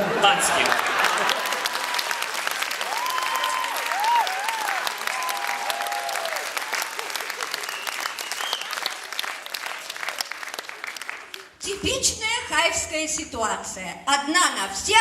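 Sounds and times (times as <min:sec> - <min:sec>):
audience applauding: 0:00.0 - 0:11.7.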